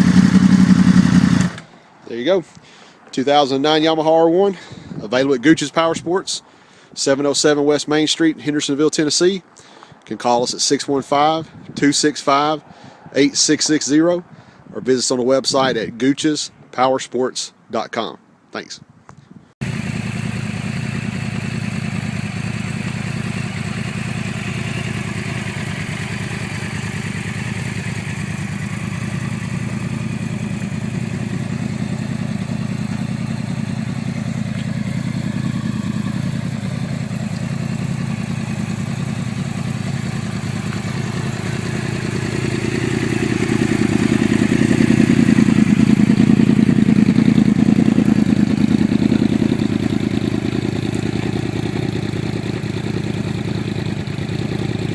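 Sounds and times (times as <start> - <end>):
motorcycle engine running: 0.0 - 1.7, 19.6 - 54.9.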